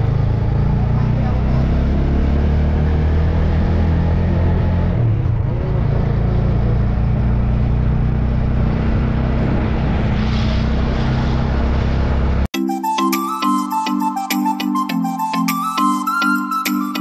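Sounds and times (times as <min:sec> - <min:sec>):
motorcycle engine running: 0:00.0 - 0:10.2
rushing noise: 0:09.2 - 0:12.5.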